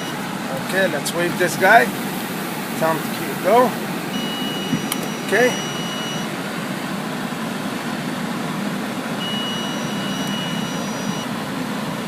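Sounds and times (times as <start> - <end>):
car engine running under load: 0.0 - 12.0
thin high tone: 9.2 - 11.3.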